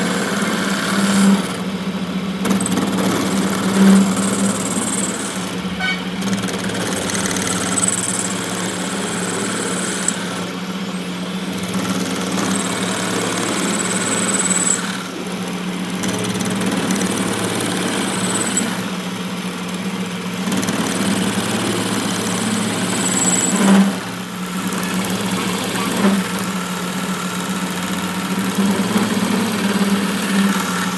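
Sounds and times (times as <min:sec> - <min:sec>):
machine humming: 0:00.0 - 0:08.2, 0:22.2 - 0:30.9.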